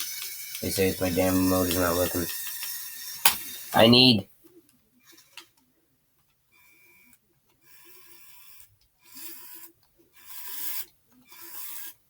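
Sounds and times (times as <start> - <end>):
small electric motors whirring: 0.0 - 4.0, 6.5 - 12.0.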